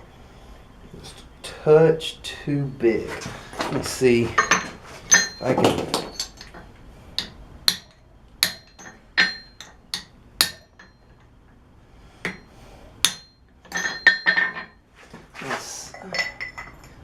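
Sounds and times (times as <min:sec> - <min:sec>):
hammer tapping metal: 0:07.2 - 0:11.1, 0:12.2 - 0:14.8.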